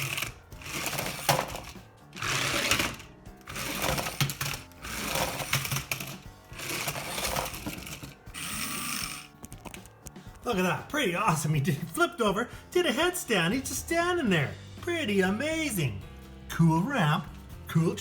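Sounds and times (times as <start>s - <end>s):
toy truck electric motor whirring: 0.0s - 9.4s.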